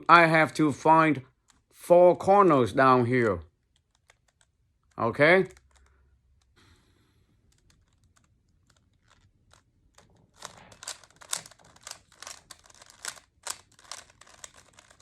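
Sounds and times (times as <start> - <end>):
plastic cube clicks: 7.5 - 15.0.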